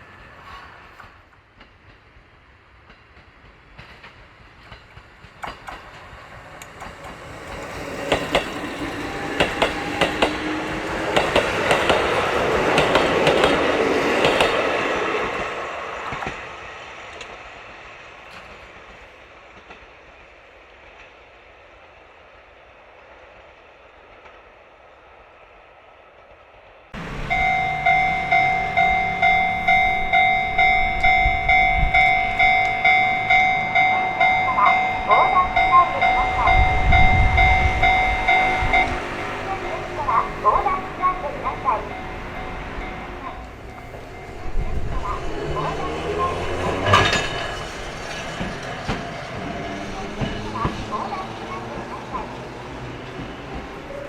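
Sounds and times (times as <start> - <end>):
train passing: 0.0 - 54.0
wheel clacks over rail joints: 2.8 - 16.4, 37.3 - 54.0.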